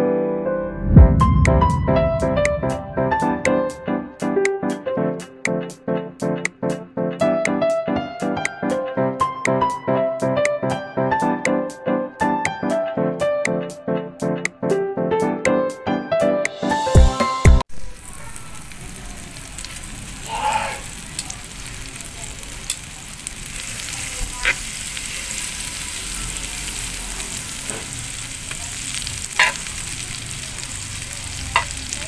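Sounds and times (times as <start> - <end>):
food sizzling in a pan: 17.7 - 32.0.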